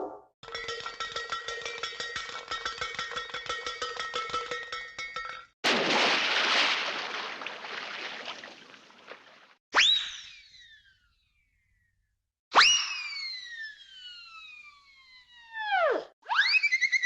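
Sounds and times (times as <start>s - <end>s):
fast clattering rattle: 0.5s - 5.4s.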